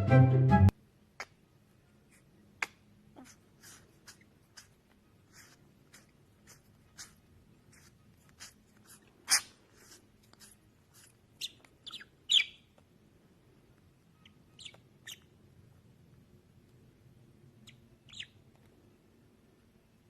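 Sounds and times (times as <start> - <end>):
bird chirping: 11.0 - 12.8, 14.1 - 15.4, 17.5 - 18.7.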